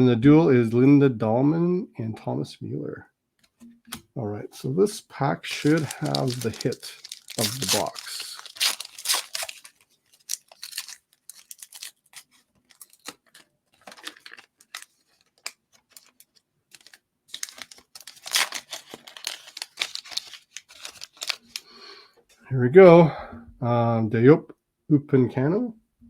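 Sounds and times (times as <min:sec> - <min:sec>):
card pack wrapper tearing: 0:05.4 - 0:21.6.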